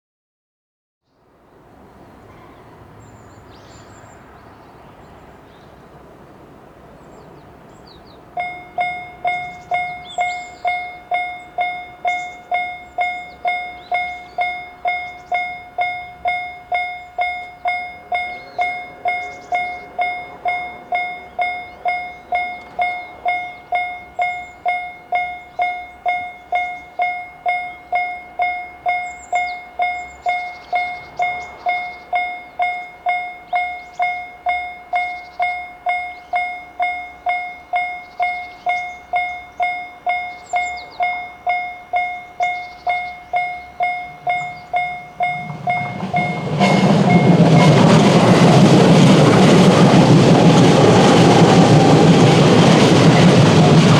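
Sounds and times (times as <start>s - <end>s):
quiet outdoor background: 1.0s - 50.6s
level crossing electronic bell: 8.4s - 48.1s.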